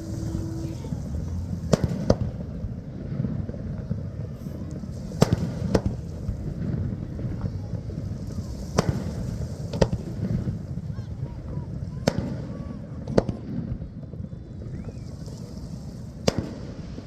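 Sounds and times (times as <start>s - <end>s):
fireworks bangs: 0.0s - 14.2s, 14.8s - 17.0s.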